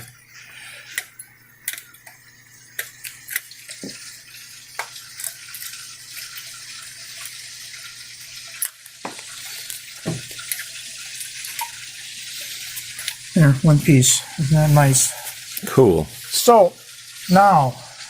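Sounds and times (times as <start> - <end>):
steady hiss: 8.6 - 18.0.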